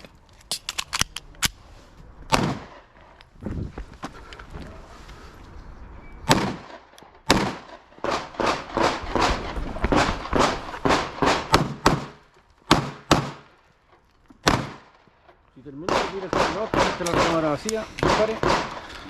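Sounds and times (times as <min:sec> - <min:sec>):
pistol shots: 0:02.3 - 0:02.9, 0:06.3 - 0:13.5, 0:14.4 - 0:15.0, 0:15.8 - 0:18.8.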